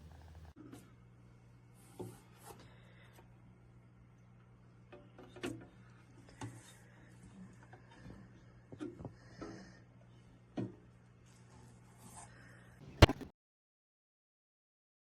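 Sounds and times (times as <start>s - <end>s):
steady low hum: 0.0s - 0.6s.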